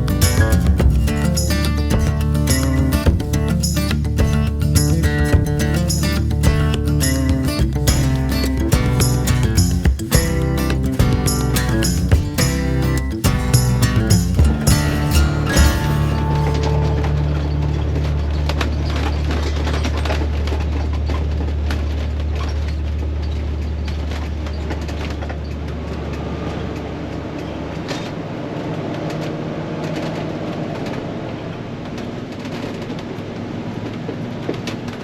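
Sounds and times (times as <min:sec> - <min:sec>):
strong low hum: 0:00.0 - 0:27.8
engine and road drone: 0:00.0 - 0:31.6.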